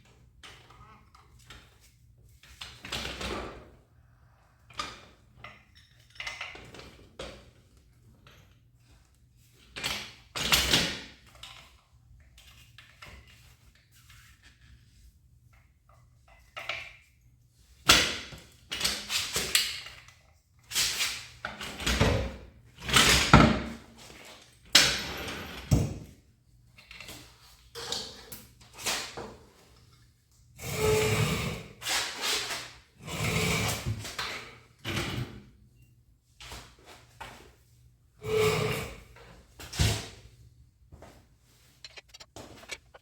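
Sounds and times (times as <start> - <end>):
irregular scrapes and clunks: 41.6 - 43.0.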